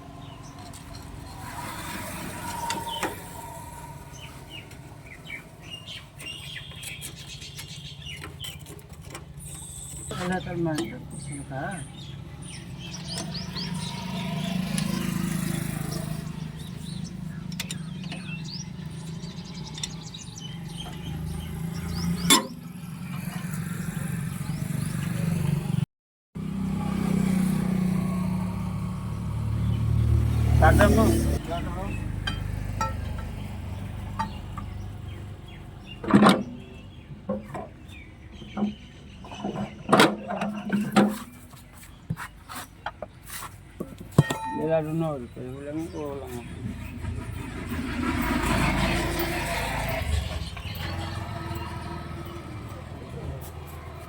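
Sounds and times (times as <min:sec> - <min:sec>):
birds chirping: 0:00.1 - 0:25.8, 0:27.0 - 0:54.0
knocks and scrapes on metal parts: 0:36.0 - 0:37.8, 0:38.4 - 0:44.8
tractor engine idling: 0:44.3 - 0:54.0.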